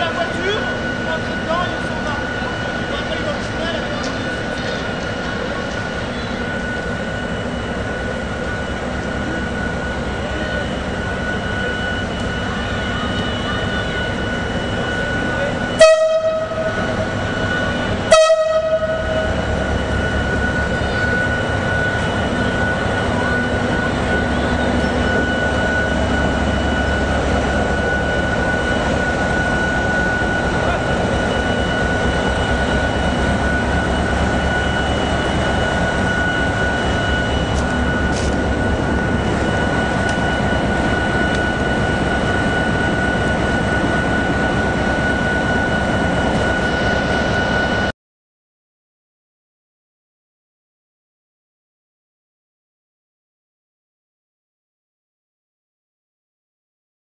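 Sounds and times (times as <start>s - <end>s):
high whine: 0.0s - 47.9s
locomotive low rumble: 0.0s - 47.9s
locomotive horn blast: 15.7s - 19.5s.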